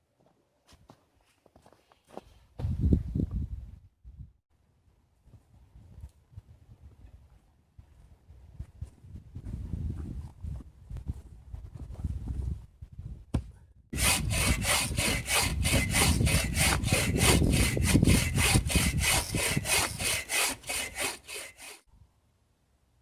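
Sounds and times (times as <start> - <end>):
saw cutting through wood: 14.0 - 21.8.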